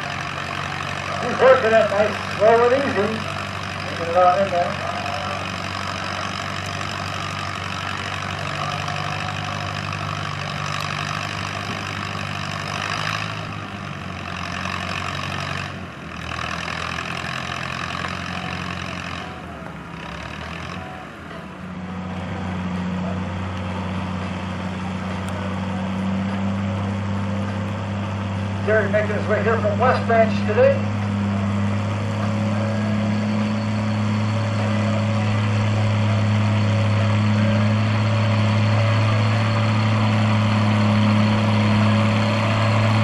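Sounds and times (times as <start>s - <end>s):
tractor engine running: 0.0s - 43.0s.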